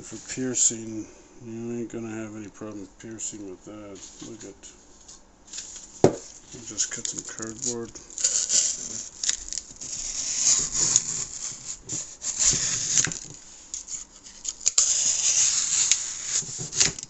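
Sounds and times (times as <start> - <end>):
knife slicing through cardboard: 8.2 - 13.3, 14.0 - 17.0.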